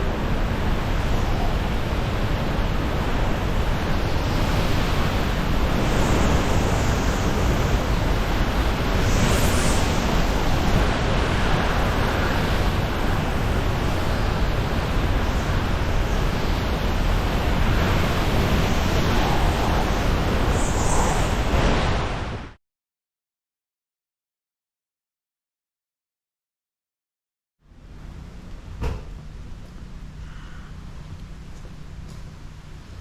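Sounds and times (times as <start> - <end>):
strong wind and rain: 0.0 - 22.6.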